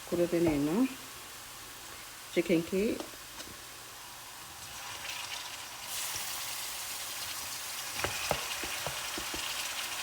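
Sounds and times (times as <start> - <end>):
chicken sizzling in hot oil: 3.8 - 10.0.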